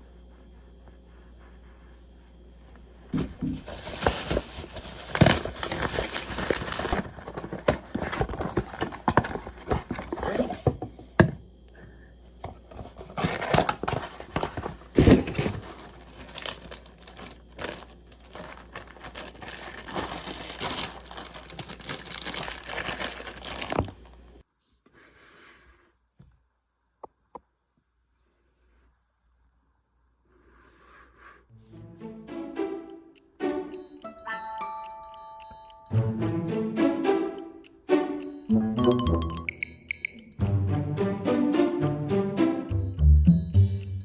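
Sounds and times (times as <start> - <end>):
packaging crinkling and tearing: 3.2 - 10.7, 12.7 - 24.4.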